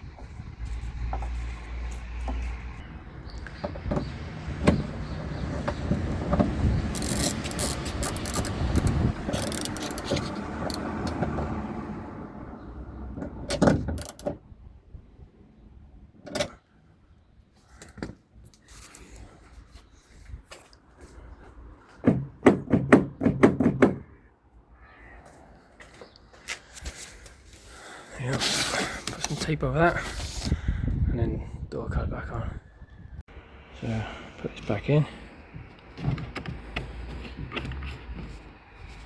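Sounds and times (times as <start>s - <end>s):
clicks and knocks of parts: 5.6s - 11.4s, 13.2s - 14.4s.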